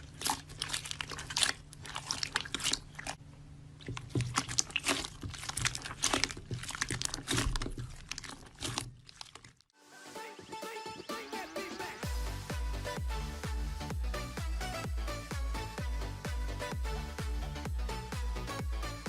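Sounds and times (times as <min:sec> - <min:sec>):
slime crackling and crunching: 0:00.0 - 0:03.2, 0:03.8 - 0:09.7.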